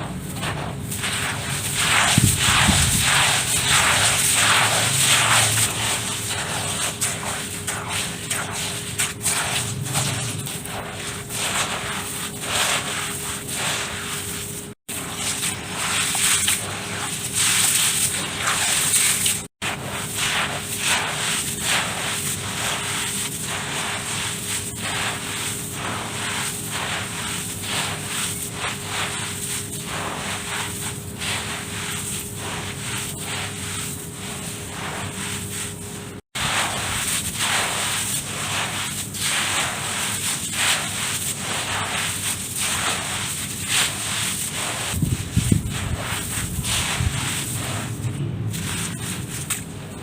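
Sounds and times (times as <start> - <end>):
hands crunching dirt: 44.8 - 50.0.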